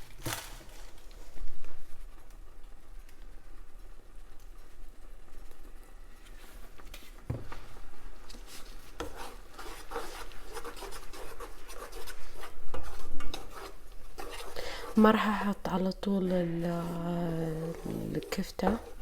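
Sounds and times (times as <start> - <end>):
utensil scraping pot: 8.3 - 19.0
faint rubbing: 16.3 - 19.0.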